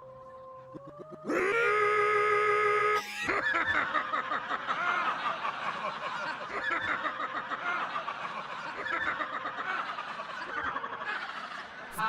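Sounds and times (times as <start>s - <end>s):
crowd laughing: 3.0s - 12.0s.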